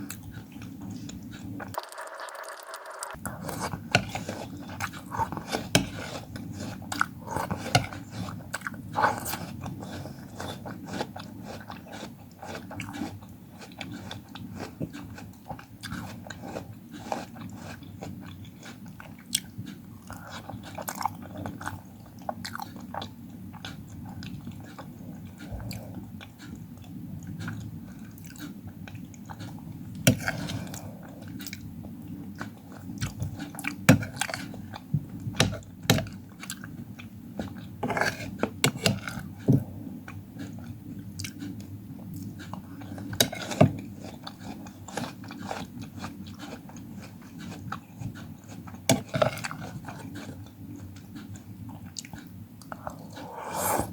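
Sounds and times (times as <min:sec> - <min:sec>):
person chewing fruit: 0:00.0 - 0:01.9, 0:03.1 - 0:53.9
steady low hum: 0:46.6 - 0:53.9.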